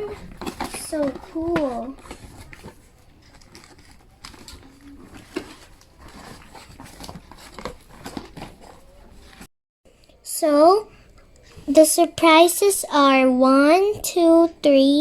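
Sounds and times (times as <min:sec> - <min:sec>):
packaging rustling: 0:00.0 - 0:09.5.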